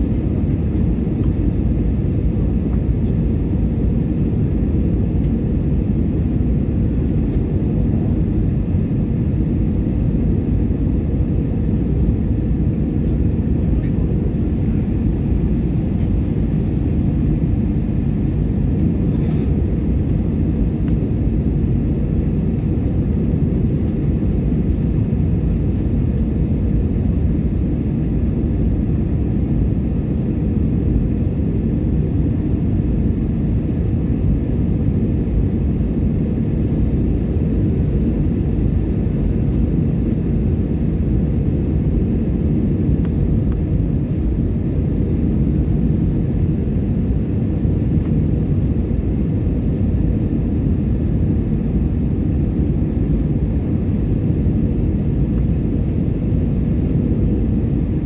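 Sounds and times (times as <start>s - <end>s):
airplane cabin rumble: 0.0s - 58.0s
faint high whine: 0.0s - 58.0s.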